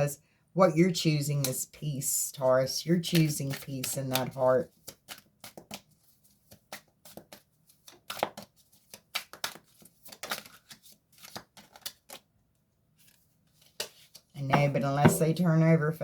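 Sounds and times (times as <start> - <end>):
cards being shuffled: 3.1 - 12.3.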